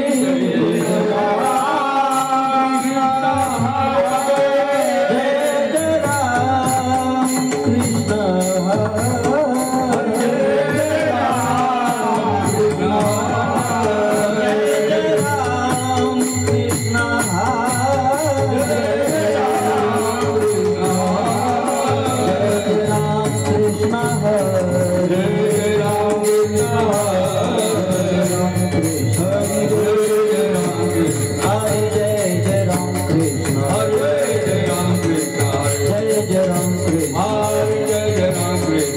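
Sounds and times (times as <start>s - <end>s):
hand cymbals clashing: 0.0s - 38.9s
man singing devotional melody: 0.0s - 38.9s.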